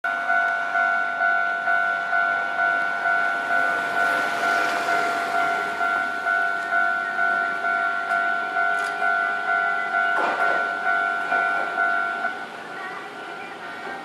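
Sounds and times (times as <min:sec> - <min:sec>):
level crossing warning bell: 0:00.1 - 0:14.0
rushing noise: 0:01.8 - 0:12.8.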